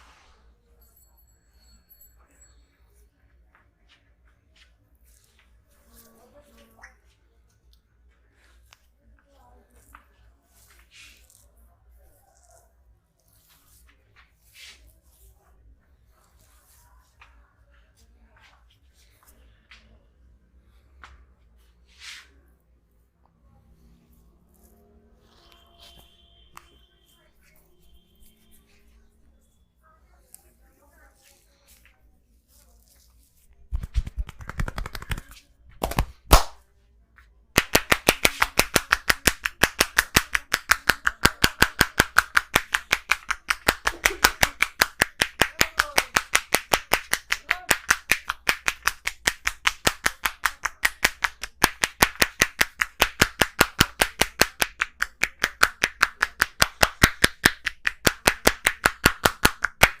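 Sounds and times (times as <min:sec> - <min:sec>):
hands rubbing: 0:09.7 - 0:19.8, 0:21.0 - 0:22.4, 0:23.8 - 0:29.2, 0:30.2 - 0:36.6, 0:37.6 - 1:00.0
hands slapping in massage: 0:32.5 - 0:36.6, 0:37.6 - 1:00.0.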